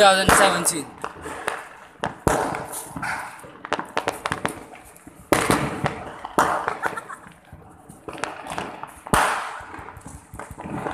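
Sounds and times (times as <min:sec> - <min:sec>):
firecrackers cracking: 0:00.0 - 0:10.9.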